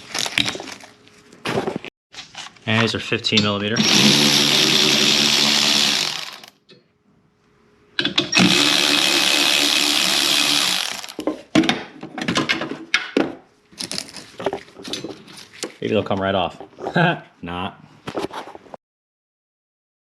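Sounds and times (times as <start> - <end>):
power tool spinning off nuts: 3.8 - 6.5, 8.4 - 11.2.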